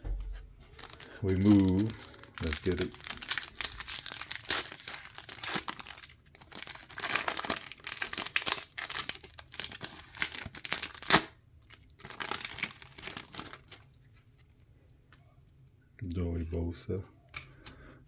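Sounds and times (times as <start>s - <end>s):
wrapper tearing and crinkling: 0.6s - 13.9s.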